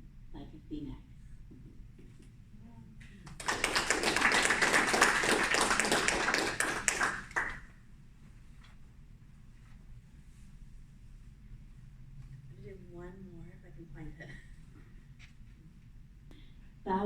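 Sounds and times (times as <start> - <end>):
audience applauding: 3.3 - 7.7.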